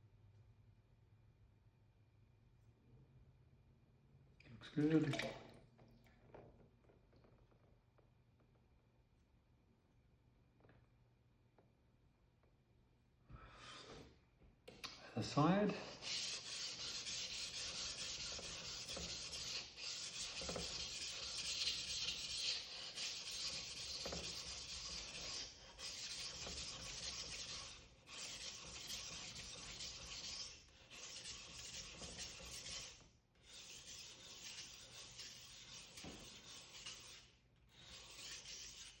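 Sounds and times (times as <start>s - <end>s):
knife scraping on a wet whetstone: 15.8s - 39.0s.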